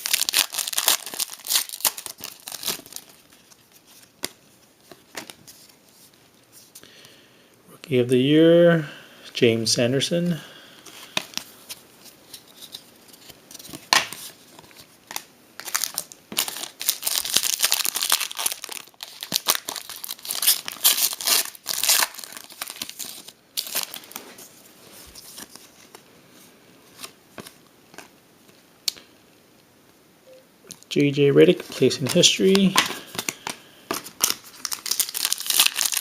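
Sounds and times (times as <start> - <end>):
wrapper being torn and crinkled: 0.0 - 4.4, 12.3 - 24.2, 34.0 - 36.0
cards being handled: 26.9 - 28.1, 31.6 - 36.0.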